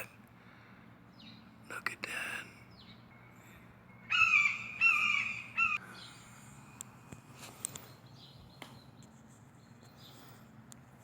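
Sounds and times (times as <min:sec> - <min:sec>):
faint bird chirps: 0:01.1 - 0:06.8
hawk screaming: 0:04.1 - 0:05.8.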